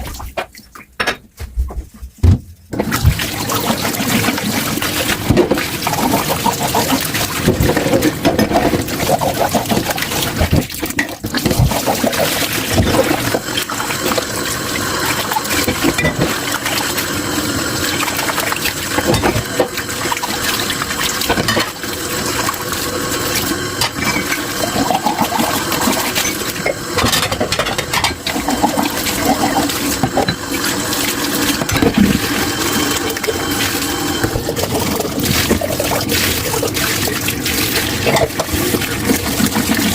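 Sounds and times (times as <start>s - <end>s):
dishes clinking and knocking: 1.0s - 1.3s, 15.6s - 16.4s, 19.0s - 19.7s, 21.3s - 21.8s, 23.8s - 30.5s, 31.6s - 32.4s
tap water splashing into sink: 2.8s - 17.0s, 33.1s - 39.9s.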